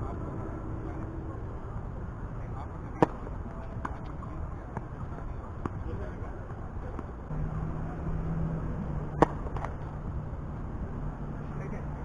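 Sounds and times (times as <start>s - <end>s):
low steady engine hum: 0.0s - 12.0s
tennis ball hit by rackets: 3.0s - 4.1s, 9.1s - 9.9s.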